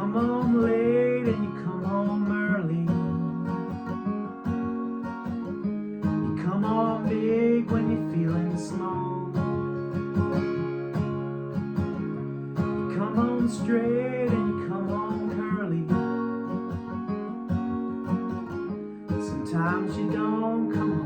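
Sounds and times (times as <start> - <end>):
person singing: 0.0 - 3.6, 6.4 - 9.4, 12.8 - 16.0, 19.1 - 21.0
acoustic guitar strumming: 0.0 - 21.0.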